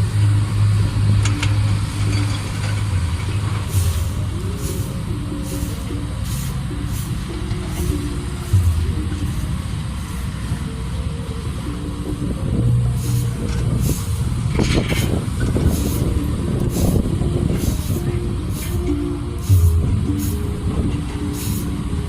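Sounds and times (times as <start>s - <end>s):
heavy diesel machinery running: 0.0s - 22.0s.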